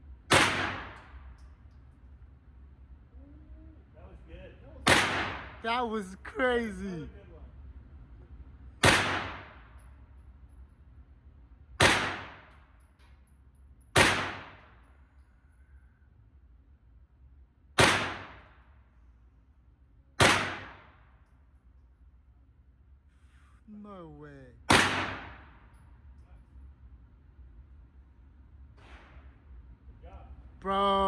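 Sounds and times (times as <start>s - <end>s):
gunshots with echo: 0.3s - 1.2s, 4.8s - 5.9s, 8.8s - 9.7s, 11.8s - 12.5s, 14.0s - 14.7s, 17.8s - 18.5s, 20.2s - 21.0s, 24.7s - 25.6s.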